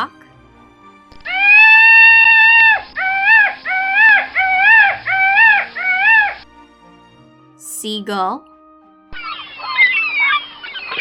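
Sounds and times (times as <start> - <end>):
peacock calling: 1.3 - 6.5, 9.1 - 11.0.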